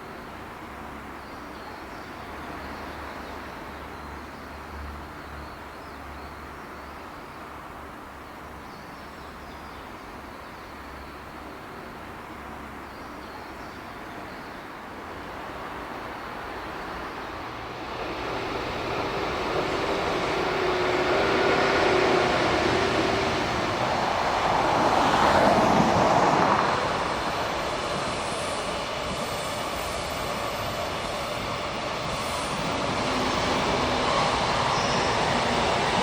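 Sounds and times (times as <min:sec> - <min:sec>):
freight train running past: 0:14.6 - 0:36.0.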